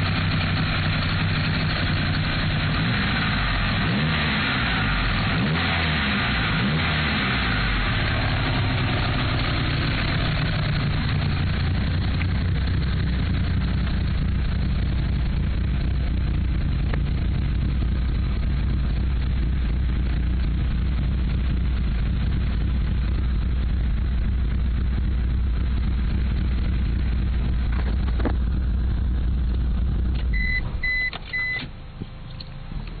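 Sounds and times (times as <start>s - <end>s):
car engine idling roughly: 0.0s - 31.6s
short high beeps: 30.3s - 31.7s.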